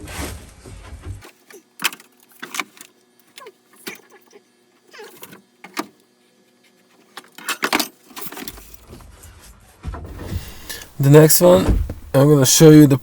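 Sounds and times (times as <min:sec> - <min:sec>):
low rumbling: 0:10.1 - 0:12.4.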